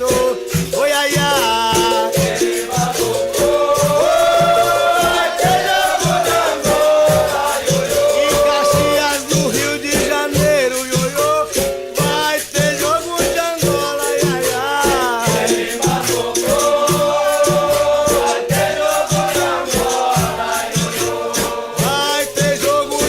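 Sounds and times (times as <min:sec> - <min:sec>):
berimbau: 0:00.0 - 0:23.0
shaken rattle: 0:00.0 - 0:23.0
steady drum beat: 0:00.0 - 0:23.0
voices singing a chorus: 0:00.0 - 0:23.0.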